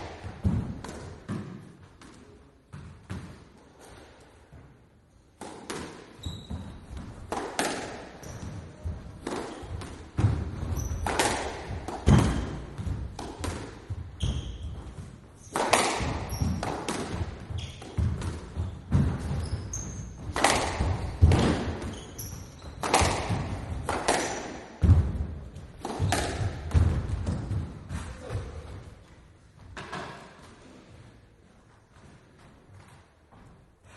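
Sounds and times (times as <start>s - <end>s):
squash ball hits: 0.0s - 4.0s, 5.4s - 28.8s
shoe squeaks: 6.2s - 6.9s, 8.2s - 8.9s, 10.6s - 11.3s, 14.2s - 15.5s, 16.2s - 16.7s, 17.5s - 18.0s, 18.6s - 20.2s, 21.8s - 23.1s.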